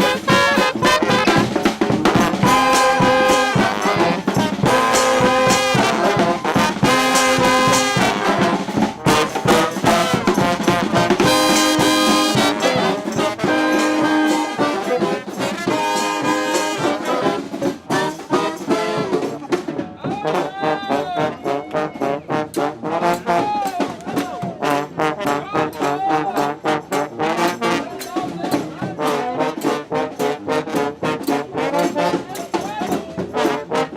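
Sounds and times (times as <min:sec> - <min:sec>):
rapid drum strokes: 0:00.0 - 0:20.3
street brass band playing: 0:00.0 - 0:33.9.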